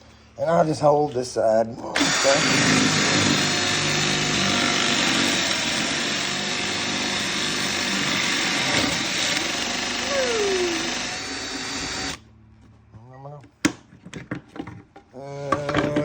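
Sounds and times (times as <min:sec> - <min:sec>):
power tool cutting wood: 0:01.9 - 0:12.2.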